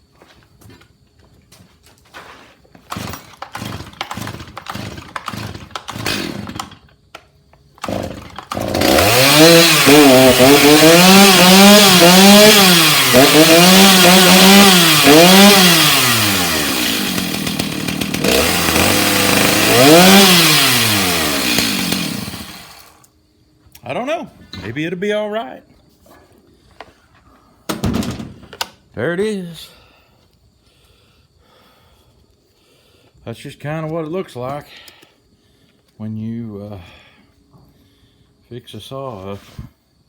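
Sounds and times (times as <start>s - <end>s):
chainsaw engine revving: 2.9s - 6.9s, 7.8s - 23.0s
starter cord pulls: 2.9s - 7.2s, 7.8s - 10.7s.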